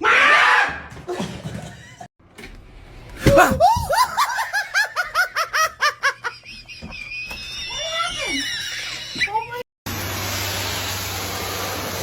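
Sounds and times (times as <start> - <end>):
person laughing hard: 3.3 - 7.6.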